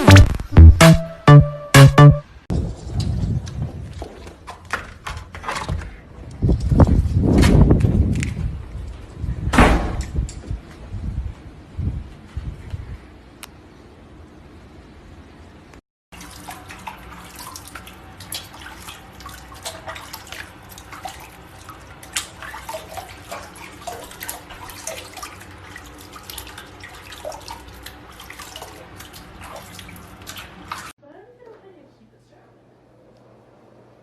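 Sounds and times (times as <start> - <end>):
running water: 16.1 - 31.0
water splashes and drips: 16.1 - 31.0.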